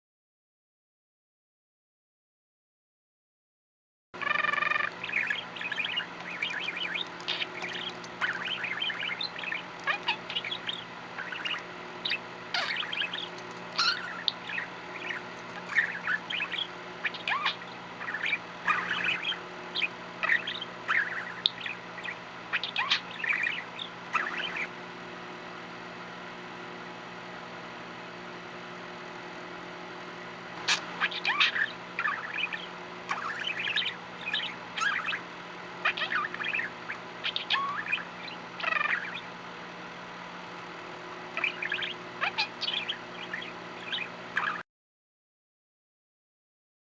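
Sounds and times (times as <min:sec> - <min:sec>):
budgerigar chirping and trilling: 0:04.2 - 0:24.7, 0:30.6 - 0:39.3, 0:41.2 - 0:44.6
steady low hum: 0:04.2 - 0:44.6.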